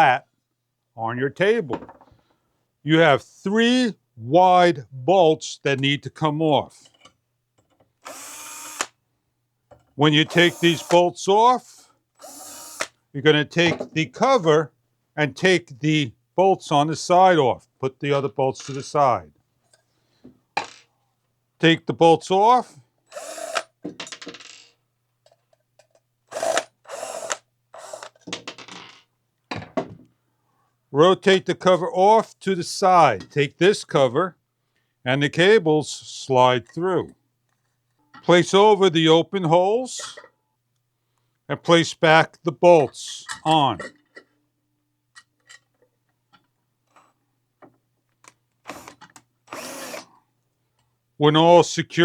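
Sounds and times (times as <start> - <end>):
cordless drill running: 8.0 - 8.9, 10.2 - 11.0, 11.6 - 13.0, 23.1 - 23.7, 26.3 - 28.2, 48.7 - 50.1.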